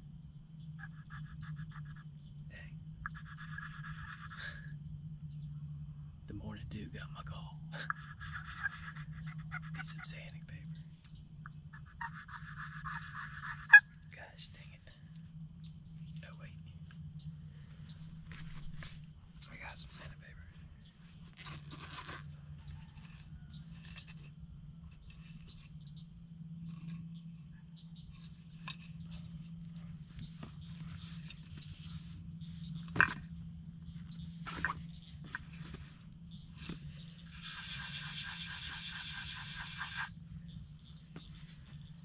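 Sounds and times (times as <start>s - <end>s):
sandpaper scraping: 11.8s - 13.8s, 36.6s - 40.1s.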